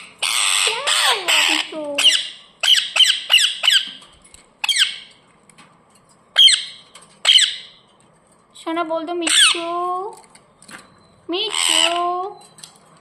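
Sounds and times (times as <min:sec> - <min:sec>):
parrot squawking: 0:00.0 - 0:04.0, 0:04.6 - 0:05.2, 0:06.4 - 0:07.9, 0:09.2 - 0:09.7, 0:11.4 - 0:12.4.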